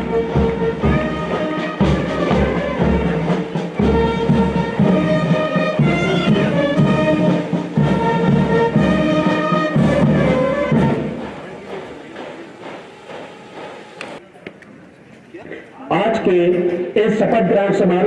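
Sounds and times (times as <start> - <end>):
steady low beat: 0.0 - 14.2.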